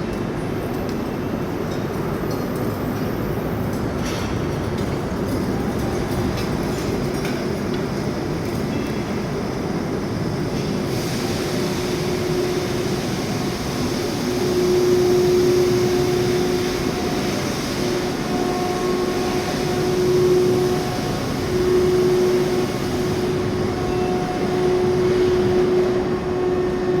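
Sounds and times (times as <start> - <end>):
furnace roaring: 0.4 - 27.0.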